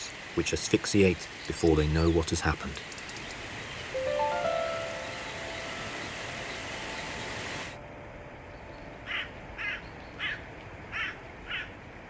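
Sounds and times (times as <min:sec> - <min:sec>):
steady hiss: 0:00.0 - 0:09.0
crow cawing: 0:09.1 - 0:11.7.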